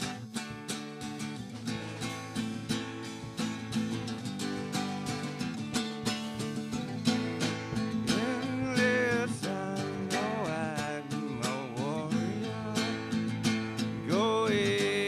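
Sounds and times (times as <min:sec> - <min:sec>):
acoustic guitar strumming: 0:00.0 - 0:15.0
sliding lead melody: 0:01.7 - 0:10.8.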